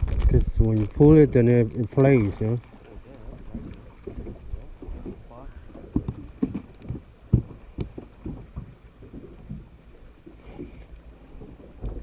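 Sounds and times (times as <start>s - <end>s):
low thumps and knocks on boat: 3.2s - 12.0s.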